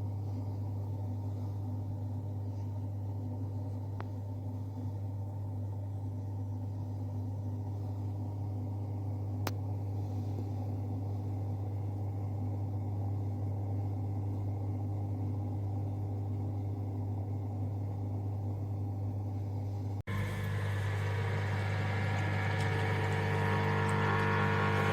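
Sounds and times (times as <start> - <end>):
dishwasher motor hum: 0.0 - 24.9.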